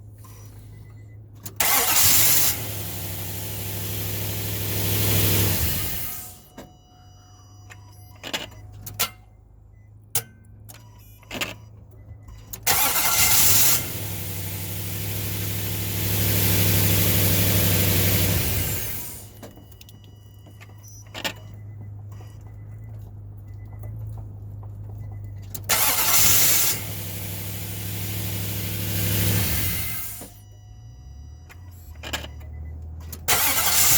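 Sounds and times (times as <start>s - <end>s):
truck engine cranking and starting: 0.0s - 6.5s, 11.4s - 19.9s, 25.4s - 33.9s
ignition clicks: 1.4s - 2.9s, 12.4s - 14.3s, 25.5s - 27.1s, 31.5s - 33.9s
engine idling: 1.6s - 6.4s, 12.7s - 19.4s, 25.7s - 30.3s, 33.3s - 33.9s
engine revving: 1.6s - 6.4s, 12.7s - 19.3s, 25.7s - 30.3s, 33.2s - 33.9s.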